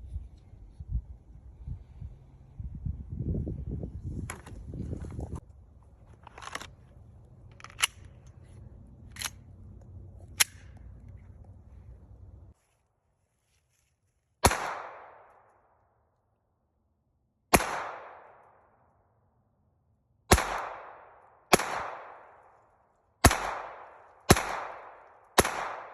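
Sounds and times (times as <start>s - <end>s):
pistol shots: 14.4s - 15.4s, 17.5s - 18.4s, 20.3s - 22.4s, 23.2s - 25.9s.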